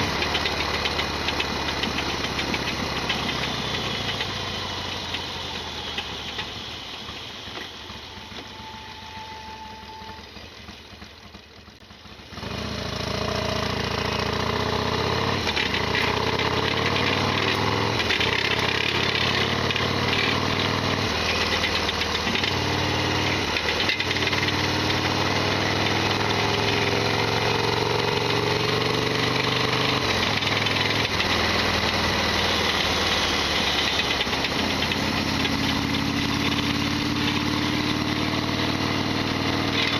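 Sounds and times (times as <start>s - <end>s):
loud rattling engine noise: 0.0s - 39.9s
motorcycle engine accelerating: 0.0s - 39.9s.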